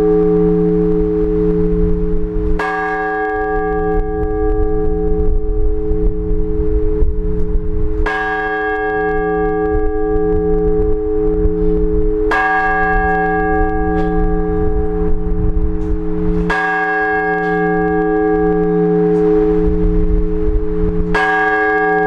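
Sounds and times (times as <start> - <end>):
large church bell tolling: 0.0 - 22.0.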